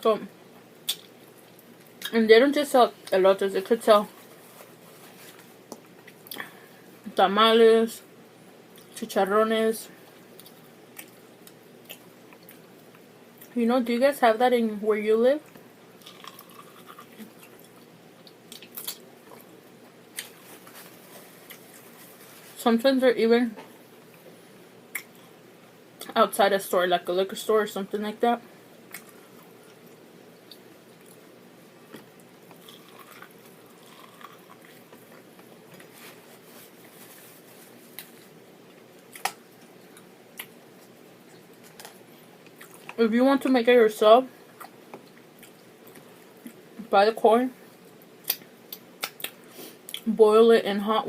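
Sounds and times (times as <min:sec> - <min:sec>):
chewing corn on the cob: 0:16.0 - 0:19.5.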